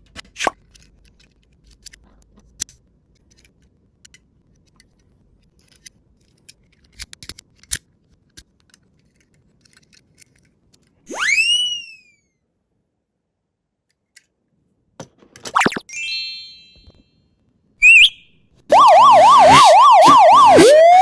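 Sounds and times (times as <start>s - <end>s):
toy car clicks and ticks: 0.1s - 11.0s
whistle-like sound effect: 11.1s - 12.1s, 15.6s - 16.9s, 17.8s - 21.0s.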